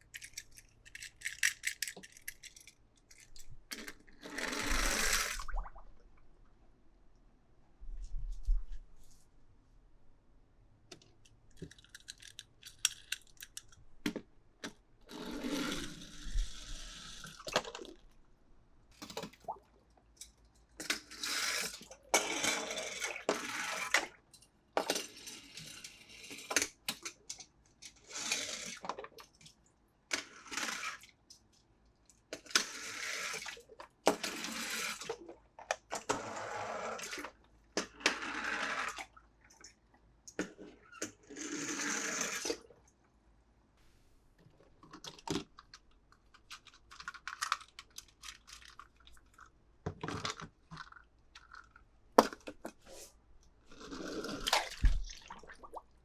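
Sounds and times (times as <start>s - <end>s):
plastic packaging crinkling: 46.3s - 49.4s.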